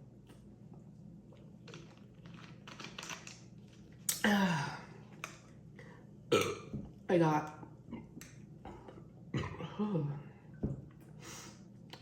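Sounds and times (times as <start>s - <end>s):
person burping: 6.3s - 6.7s, 9.3s - 9.8s.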